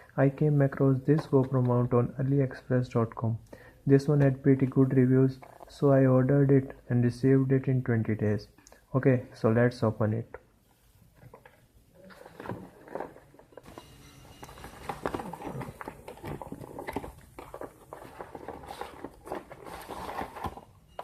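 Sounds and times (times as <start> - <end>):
packaging rustling and crinkling: 11.1 - 21.0.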